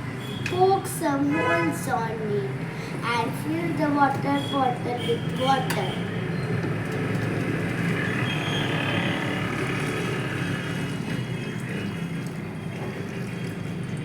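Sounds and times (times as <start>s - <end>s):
water filling plastic bottle: 9.6s - 14.0s.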